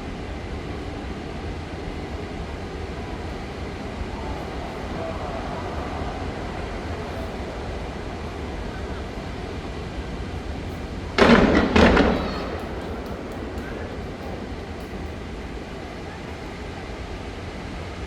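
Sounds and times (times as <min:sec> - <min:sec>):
faint firework crackles: 0:00.6 - 0:17.6
fireworks booming: 0:07.0 - 0:16.7.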